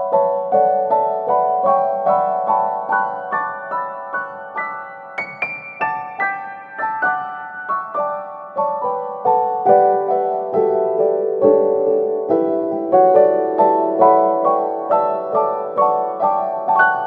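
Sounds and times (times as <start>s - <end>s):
gentle piano melody: 0.0s - 17.0s.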